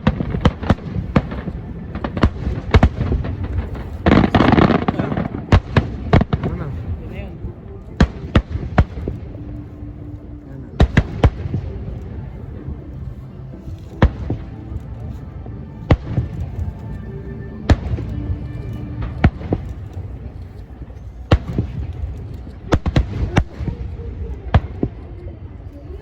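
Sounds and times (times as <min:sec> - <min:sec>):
fireworks bangs: 0:00.0 - 0:07.3, 0:21.3 - 0:25.0
steady low rumble: 0:00.0 - 0:26.0.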